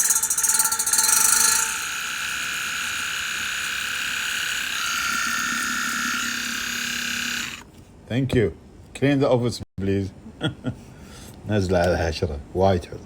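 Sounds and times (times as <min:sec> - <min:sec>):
water flosser pump buzzing: 0:00.0 - 0:07.7.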